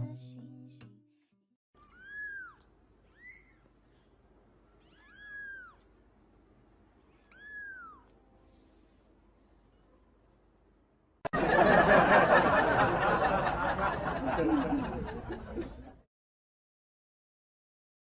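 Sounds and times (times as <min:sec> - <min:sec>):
people laughing: 0:11.3 - 0:16.1
people talking: 0:11.4 - 0:16.0.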